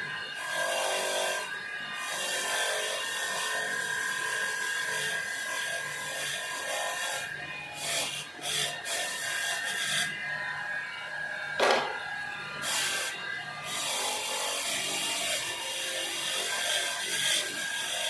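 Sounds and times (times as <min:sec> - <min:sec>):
sharp knock: 0:11.6 - 0:12.0.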